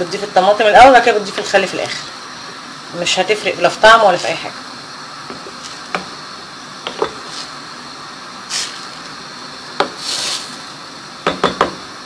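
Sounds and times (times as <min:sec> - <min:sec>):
sauce hissing on stove: 0:00.0 - 0:12.0
metal utensil knocking on pot: 0:11.3 - 0:11.8.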